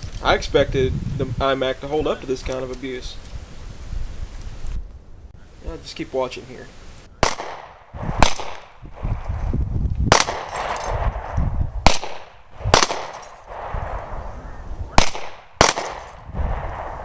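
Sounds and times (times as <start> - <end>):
gunshots: 7.2 - 8.8, 10.1 - 17.0
low rumble: 13.4 - 15.0, 16.1 - 17.0.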